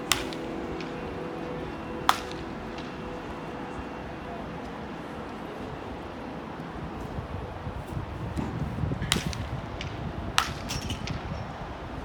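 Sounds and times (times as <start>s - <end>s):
bat hitting ball crack: 0.0s - 1.3s, 2.0s - 3.0s, 8.4s - 11.3s
background music: 0.0s - 8.2s.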